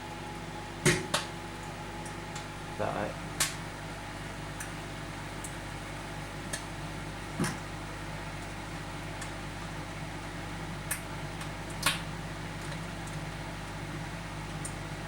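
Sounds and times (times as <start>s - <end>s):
microwave oven humming: 0.0s - 15.0s
egg popping: 3.4s - 3.6s, 10.8s - 13.3s.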